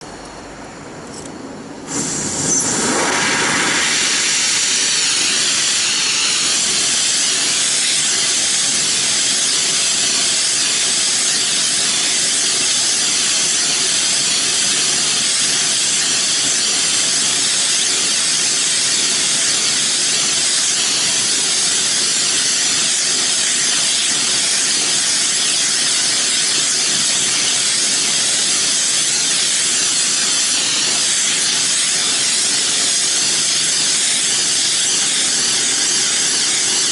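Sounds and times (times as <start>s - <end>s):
gas hissing: 1.8s - 10.8s.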